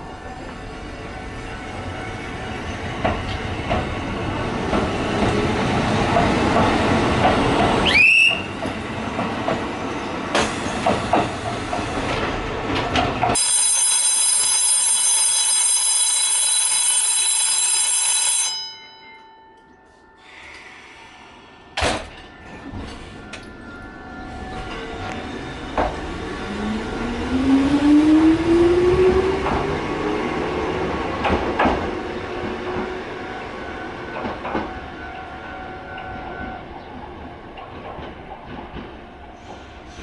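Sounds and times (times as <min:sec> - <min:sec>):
train noise: 0:00.0 - 0:40.0
electric bell ringing: 0:13.4 - 0:20.7.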